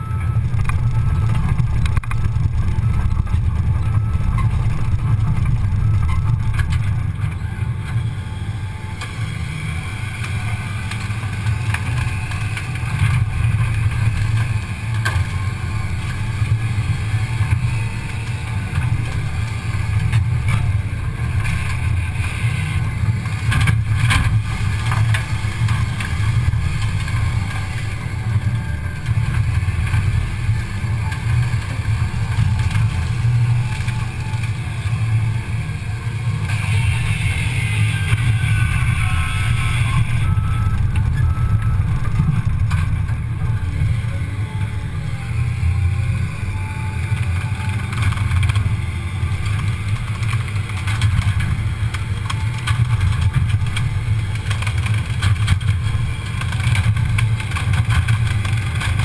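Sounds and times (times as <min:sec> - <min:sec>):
excavator diesel engine: 0:00.0 - 0:59.0
high whine: 0:00.0 - 0:59.0.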